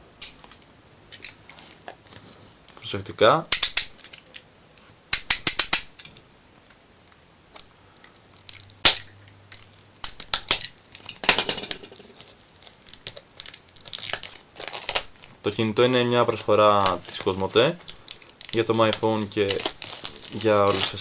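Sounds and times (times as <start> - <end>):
plastic wrap clicking and snapping: 3.5 - 4.5, 7.0 - 15.6, 16.3 - 21.0
plastic crinkling: 7.0 - 21.0.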